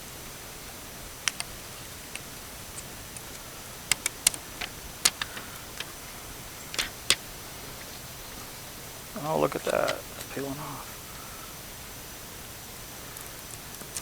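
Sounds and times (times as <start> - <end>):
steady low hiss: 0.0 - 14.0
fingers clicking and tapping plastic: 2.2 - 5.9, 6.7 - 7.2.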